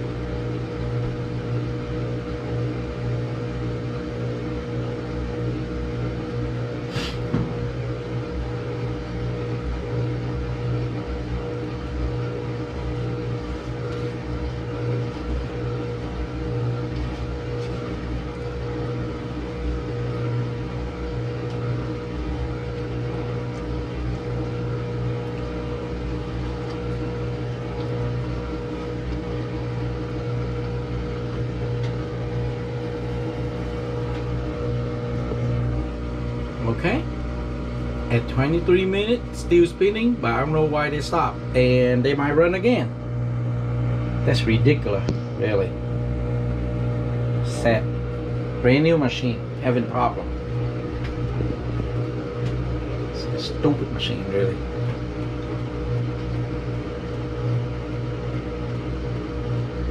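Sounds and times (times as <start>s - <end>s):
washing machine spinning: 0.0s - 59.9s.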